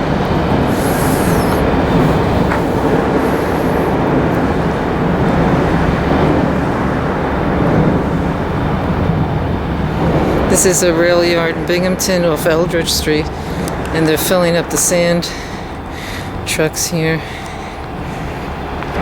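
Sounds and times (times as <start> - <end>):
heavy diesel machinery rumbling: 0.0 - 19.0
high hisses: 0.5 - 4.7.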